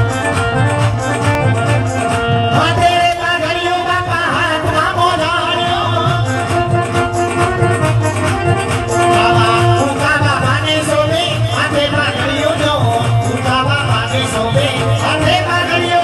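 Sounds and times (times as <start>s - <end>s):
folk instruments with steady beat: 0.0s - 16.0s
person singing: 8.9s - 16.0s.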